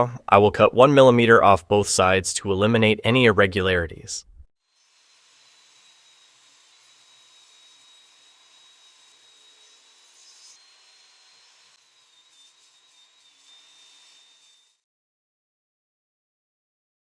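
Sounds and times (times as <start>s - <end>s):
table saw cutting wood: 4.7s - 14.8s.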